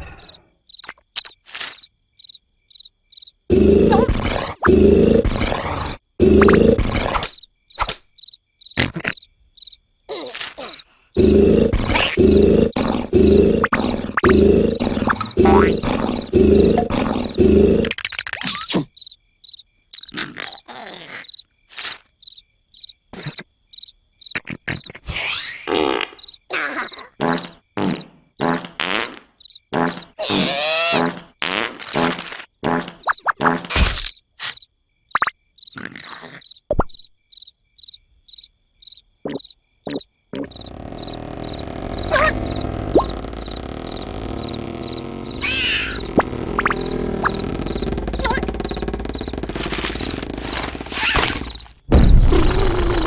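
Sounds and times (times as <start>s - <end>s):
cartoon cricket chirping: 0.0s - 53.0s
squeaky sound effects: 3.5s - 7.9s, 10.1s - 18.9s, 29.9s - 31.3s, 39.3s - 53.0s
steady rough noise: 11.2s - 17.9s, 40.5s - 51.5s
loud short noises: 41.0s - 53.0s.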